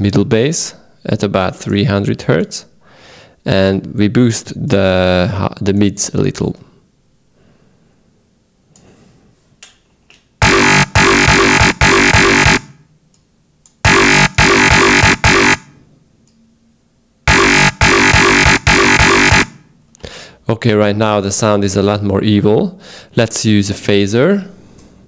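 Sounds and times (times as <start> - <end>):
growly synth bass riff: 10.4 - 12.7, 13.9 - 15.7, 17.3 - 19.6.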